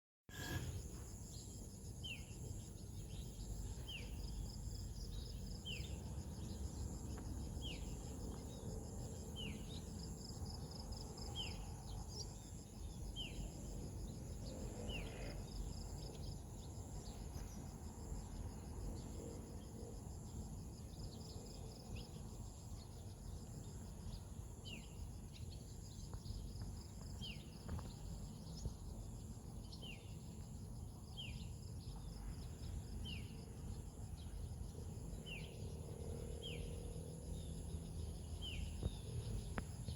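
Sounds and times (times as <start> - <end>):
insects trilling: 0.3 - 17.5.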